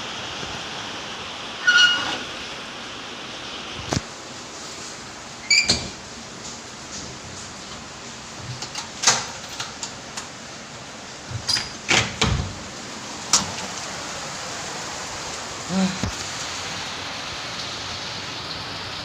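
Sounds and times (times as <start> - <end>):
rain falling: 0.0 - 19.0.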